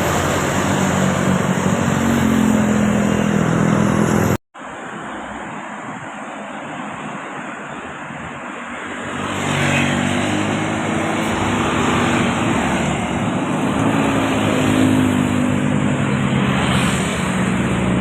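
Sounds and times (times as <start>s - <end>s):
bus driving past: 0.0s - 4.4s, 9.0s - 18.0s.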